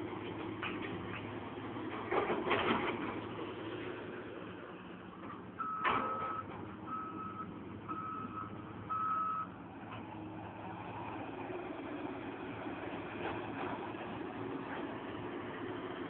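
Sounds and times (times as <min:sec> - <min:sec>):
diesel engine running: 0:00.0 - 0:16.0
excavator travel alarm beeping: 0:05.6 - 0:09.6.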